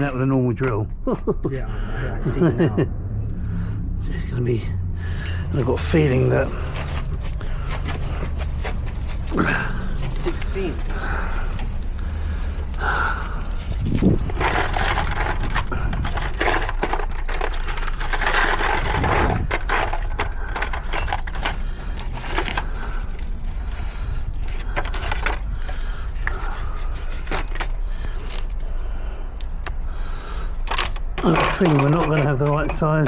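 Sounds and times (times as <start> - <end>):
steady low rumble: 0.0 - 30.7
metal tools clinking and rattling: 5.0 - 10.9, 13.8 - 28.6, 30.6 - 33.0.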